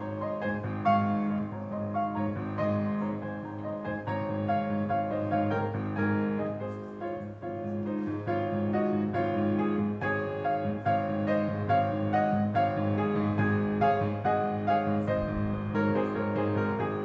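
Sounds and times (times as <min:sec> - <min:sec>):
church piano music: 0:00.0 - 0:17.0.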